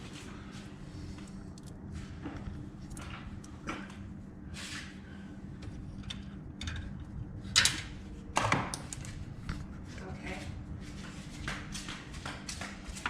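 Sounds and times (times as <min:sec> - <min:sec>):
steady low hum: 0:00.0 - 0:13.0
metal parts clicking and knocking: 0:06.0 - 0:07.8.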